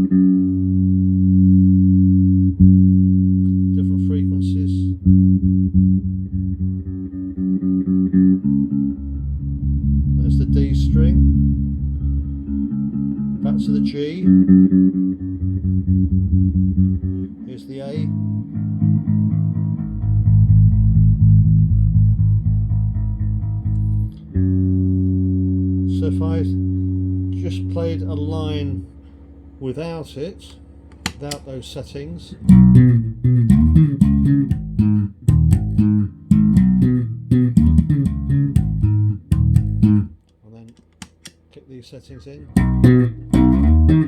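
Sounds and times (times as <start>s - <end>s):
electric bass plucked notes: 0.0s - 41.3s, 42.4s - 44.0s.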